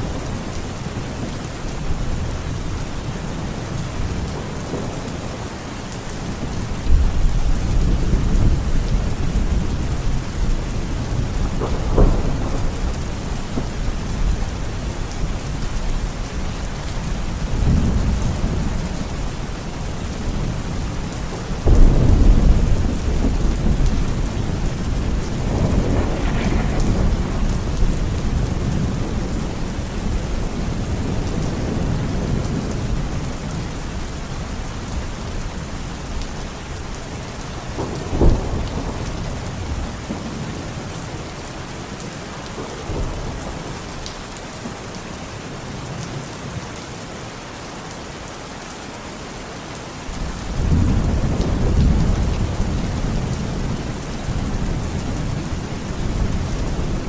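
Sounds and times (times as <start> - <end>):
steady rain falling: 0.0 - 57.0
thunder rumbling: 6.2 - 16.3, 17.1 - 33.8, 37.7 - 40.8, 50.2 - 57.0.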